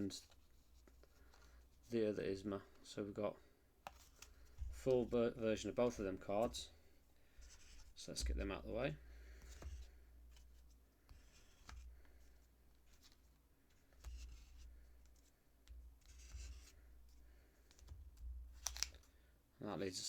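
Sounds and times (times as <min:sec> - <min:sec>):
trading cards rustling: 0:18.5 - 0:19.1.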